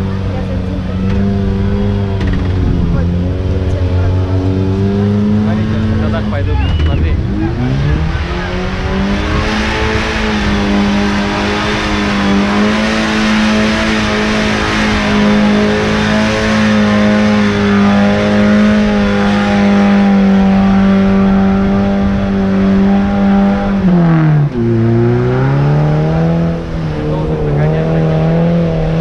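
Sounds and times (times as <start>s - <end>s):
vehicle engine revving under load: 0.0s - 29.0s.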